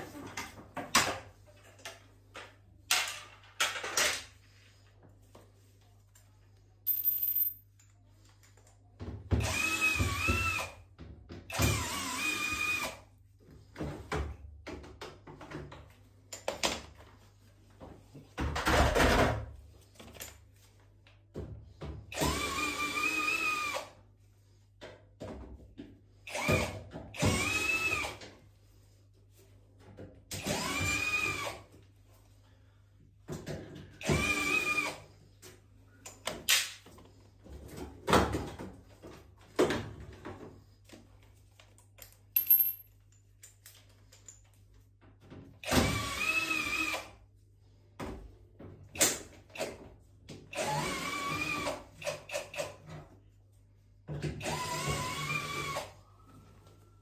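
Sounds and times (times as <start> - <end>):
power drill whining: 11.6 - 13.0, 22.2 - 23.9, 26.3 - 28.2, 30.4 - 31.6, 34.0 - 35.0, 45.6 - 47.1, 50.5 - 51.8, 54.4 - 56.0.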